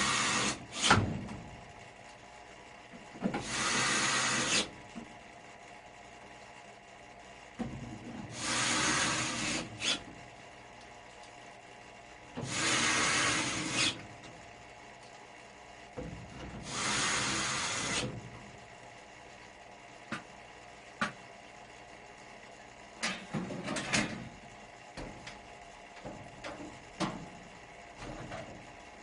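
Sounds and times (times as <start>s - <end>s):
tool rubbing against surface: 3.4s - 4.7s, 8.3s - 10.0s, 12.4s - 14.0s.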